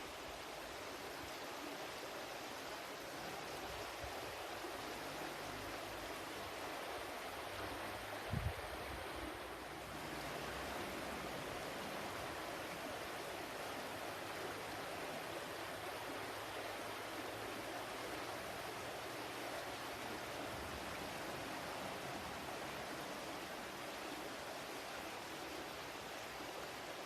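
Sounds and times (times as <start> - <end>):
flowing water: 0.0 - 27.0.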